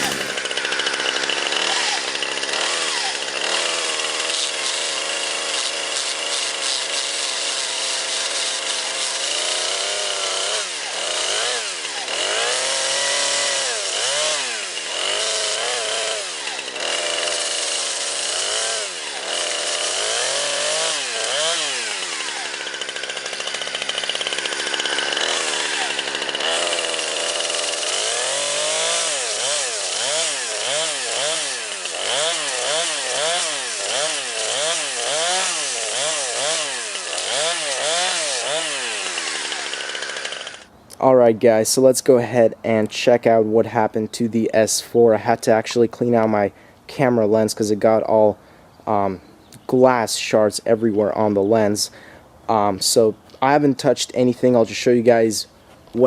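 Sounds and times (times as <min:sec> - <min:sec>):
chainsaw cutting and revving: 0:00.0 - 0:40.7.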